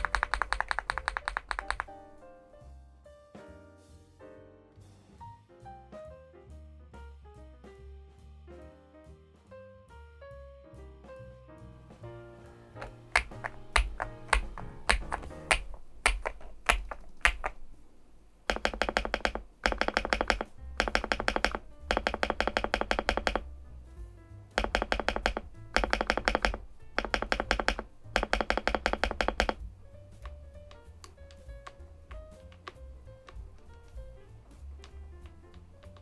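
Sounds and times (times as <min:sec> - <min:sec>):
mechanical keyboard typing: 0:00.0 - 0:02.3, 0:12.8 - 0:23.7, 0:24.6 - 0:34.2, 0:34.8 - 0:36.0.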